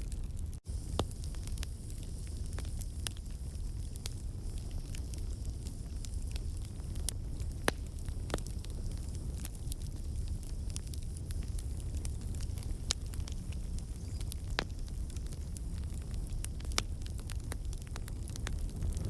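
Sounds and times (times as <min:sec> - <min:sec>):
campfire crackling and popping: 0:00.0 - 0:19.0
low rumble of flames: 0:00.0 - 0:19.0.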